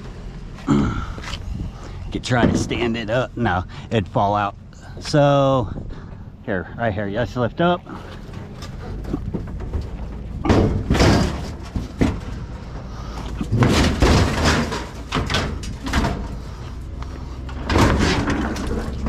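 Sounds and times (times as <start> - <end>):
heavy appliance banging and scraping: 0.0 - 3.8, 7.8 - 19.0
metal clatter: 7.9 - 19.0.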